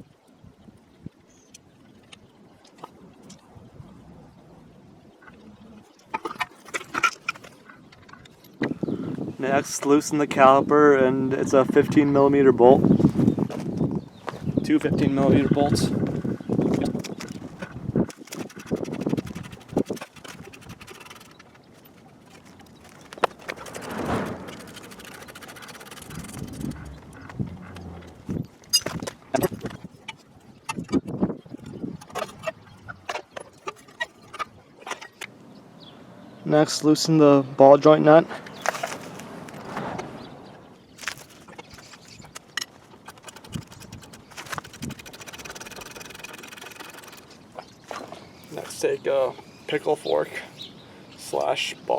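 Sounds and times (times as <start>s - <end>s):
metal tools clattering: 28.6s - 29.8s.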